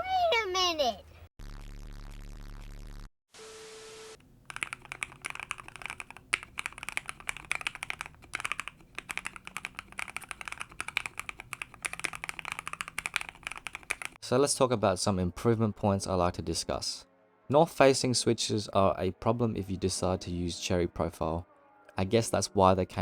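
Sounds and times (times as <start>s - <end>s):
fast keyboard typing: 4.2s - 14.2s.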